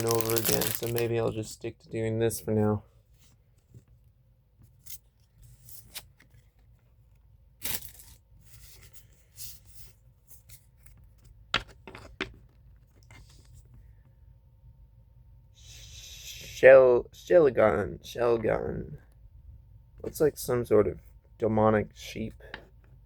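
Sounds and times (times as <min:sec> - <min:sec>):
foil pack ripping and crinkling: 0:00.0 - 0:01.3.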